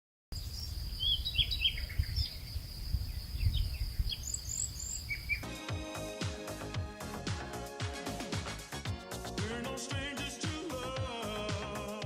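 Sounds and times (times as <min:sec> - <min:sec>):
high insect trill: 0:00.4 - 0:05.4
birds chirping: 0:00.4 - 0:05.6
music with a beat: 0:05.4 - 0:12.0.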